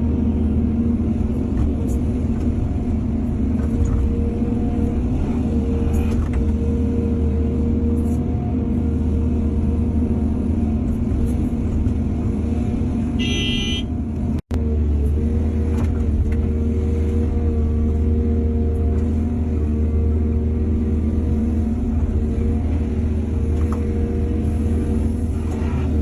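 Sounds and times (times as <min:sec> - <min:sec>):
diesel machinery engine drone: 0:00.0 - 0:26.0
short high horn tone: 0:13.2 - 0:13.9.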